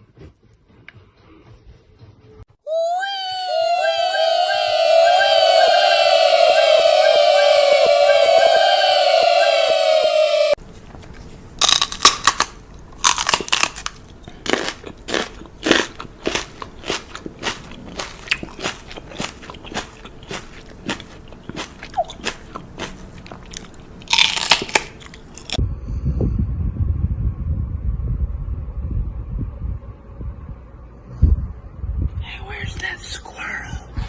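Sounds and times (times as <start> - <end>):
low rumbling noise: 2.7 - 10.6, 25.5 - 33.0.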